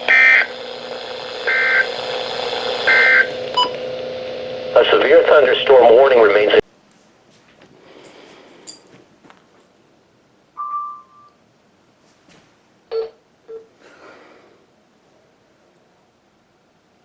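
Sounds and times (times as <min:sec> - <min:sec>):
short electronic beep: 0:10.6 - 0:11.4.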